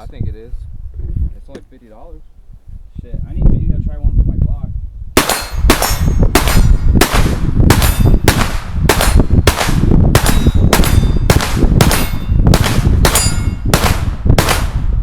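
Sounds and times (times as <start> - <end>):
rapid gunshots: 5.2 - 14.9.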